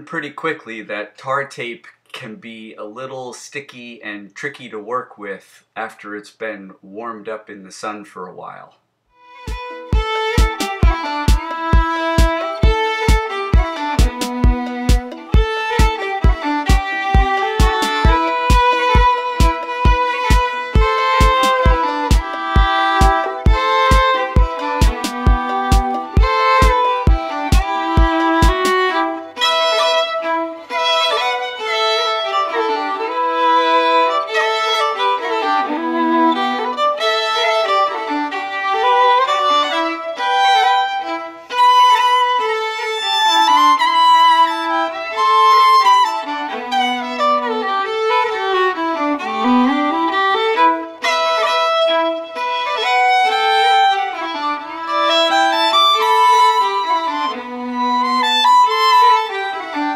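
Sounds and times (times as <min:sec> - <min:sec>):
fast instrumental melody: 0:09.4 - 0:41.0, 0:46.8 - 0:51.6.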